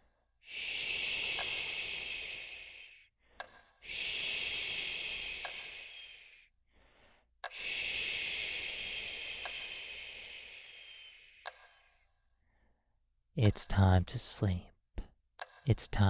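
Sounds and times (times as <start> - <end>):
faint clicks: 1.3 - 1.6.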